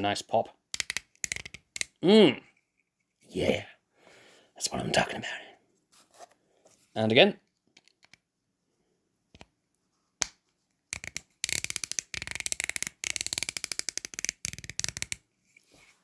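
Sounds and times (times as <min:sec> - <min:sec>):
plastic bricks clicking: 0:00.7 - 0:02.0, 0:07.8 - 0:08.2, 0:10.9 - 0:15.2.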